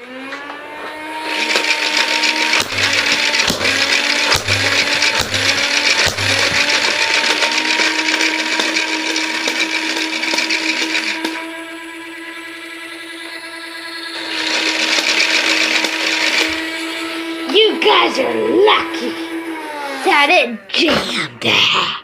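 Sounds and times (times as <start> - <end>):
toy blaster motor whine: 0.0 - 21.0
mechanical cycling: 1.3 - 11.7.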